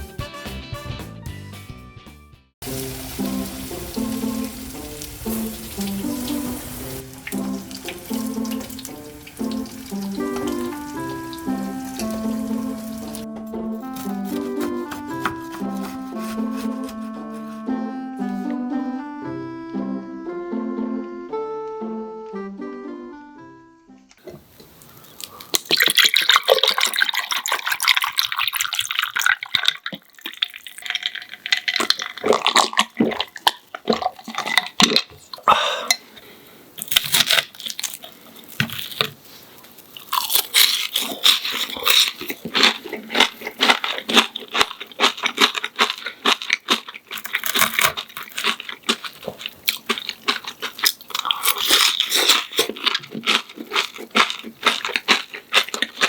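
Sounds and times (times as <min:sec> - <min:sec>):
crunching crispy breaded cutlet: 0:13.8 - 0:17.6, 0:25.2 - 0:35.1, 0:36.8 - 0:56.0.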